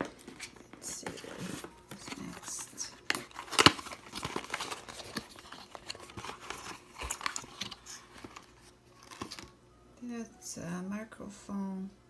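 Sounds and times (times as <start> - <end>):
packaging rustling and crinkling: 0.0 - 9.6.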